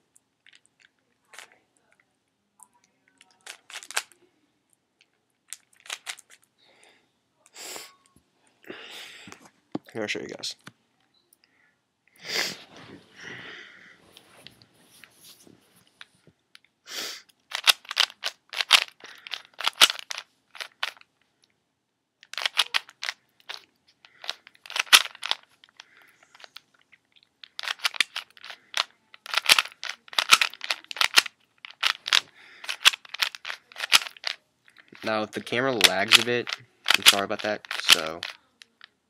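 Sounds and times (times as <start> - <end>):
puzzle cube plastic clicking: 3.2 - 4.2, 5.0 - 6.5, 17.5 - 21.1, 22.2 - 38.9.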